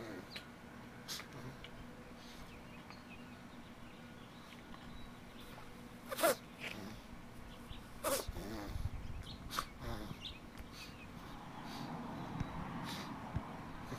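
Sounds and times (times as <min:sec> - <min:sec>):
dog sneezing: 0:06.1 - 0:06.9, 0:08.0 - 0:08.3, 0:09.5 - 0:09.8.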